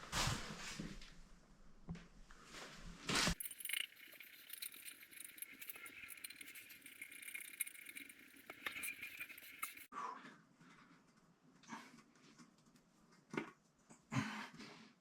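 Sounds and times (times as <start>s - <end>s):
metallic clinking of small hardware: 3.4s - 9.9s.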